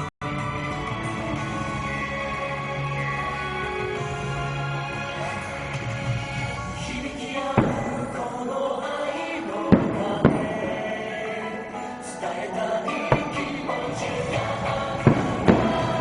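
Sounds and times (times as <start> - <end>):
music with singing: 0.0 - 16.0
firework bangs: 5.9 - 11.8, 12.9 - 16.0.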